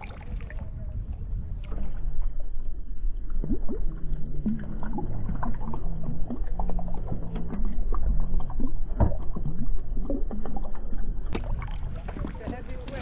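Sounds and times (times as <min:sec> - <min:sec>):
knocks and splashes: 0:00.0 - 0:02.6, 0:03.3 - 0:13.0
low drawn-out tones: 0:00.0 - 0:12.9
water slapping against kayak hull: 0:10.2 - 0:13.0.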